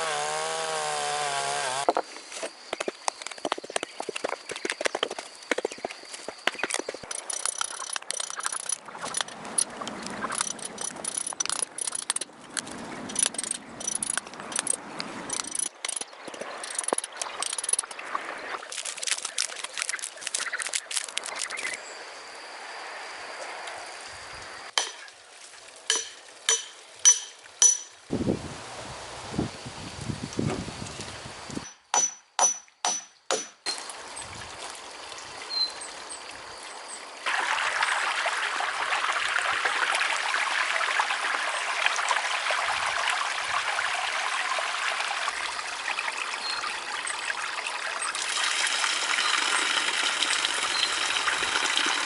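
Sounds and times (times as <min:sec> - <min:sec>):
sharp ringing strikes: 0:25.9 - 0:28.0.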